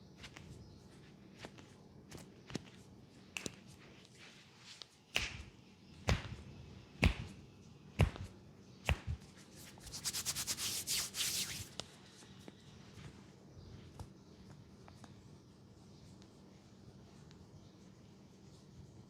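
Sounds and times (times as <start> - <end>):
hands slapping head: 1.4 - 3.8, 4.8 - 7.4, 8.0 - 11.9.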